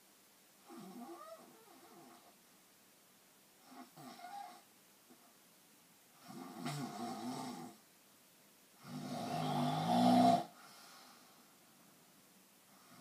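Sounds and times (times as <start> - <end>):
person snoring: 8.8 - 10.6.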